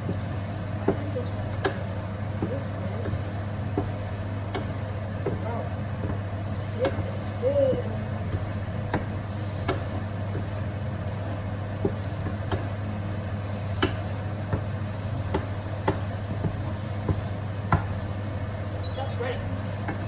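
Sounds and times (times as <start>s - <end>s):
utensil tapping against a pan: 0.0s - 5.4s, 6.0s - 7.0s, 7.7s - 10.5s, 11.8s - 12.7s, 13.8s - 18.0s
steady low hum: 0.0s - 20.0s.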